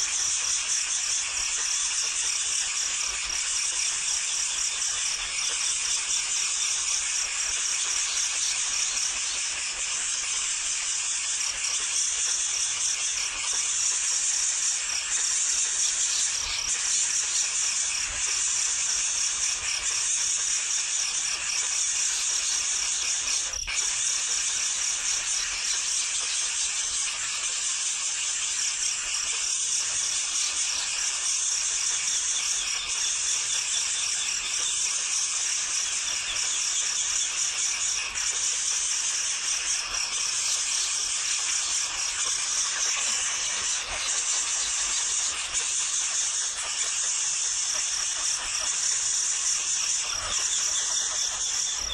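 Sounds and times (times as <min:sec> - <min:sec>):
nestling birds chirping: 0:29.9 - 0:51.9.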